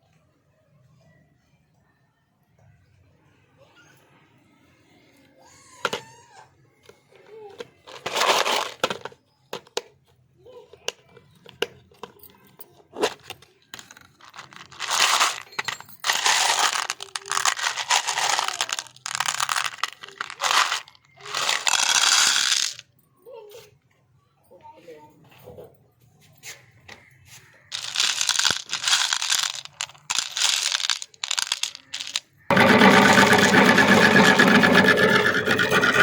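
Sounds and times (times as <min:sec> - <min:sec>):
hard candy crunching in grinder: 0:13.8 - 0:22.8, 0:27.7 - 0:36.0.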